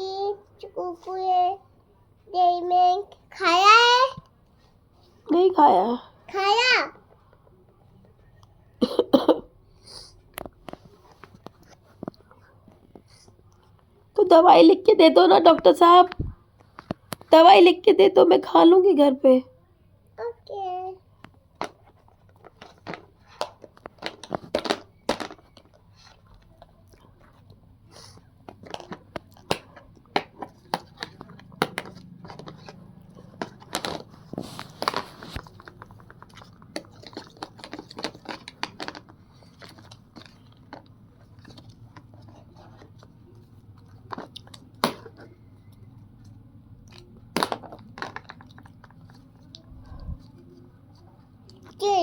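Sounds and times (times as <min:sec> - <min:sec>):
small objects clicking and crinkling: 0:21.2 - 0:51.9.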